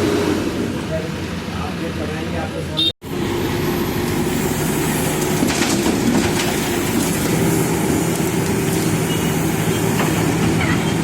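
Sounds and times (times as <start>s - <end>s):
heavy diesel engine running: 3.0s - 11.0s.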